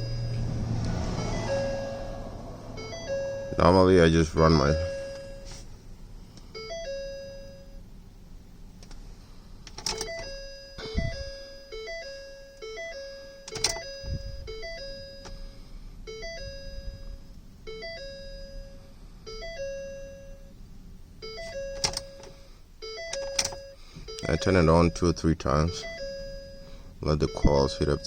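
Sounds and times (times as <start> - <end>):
two-step warning chime: 0.0 - 5.6, 6.5 - 7.8, 9.9 - 20.6, 21.2 - 28.0
low thuds: 10.8 - 11.4.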